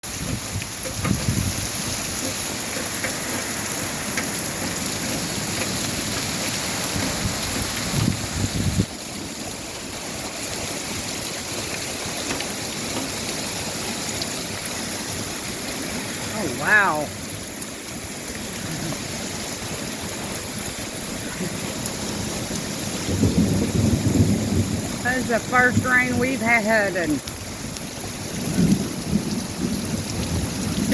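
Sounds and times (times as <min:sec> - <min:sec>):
steady rain pattering: 0:00.0 - 0:30.9
low rumble of thunder: 0:20.7 - 0:26.2, 0:27.2 - 0:30.9.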